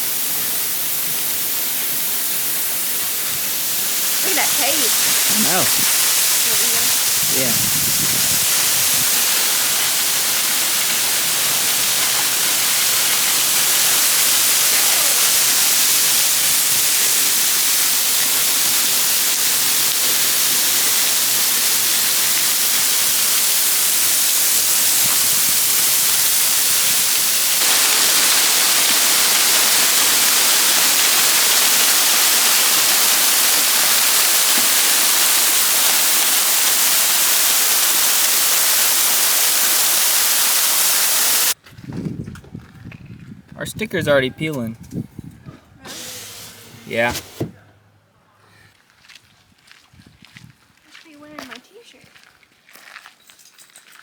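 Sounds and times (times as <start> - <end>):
waterfall pouring: 0.0 - 41.6, 46.2 - 47.3.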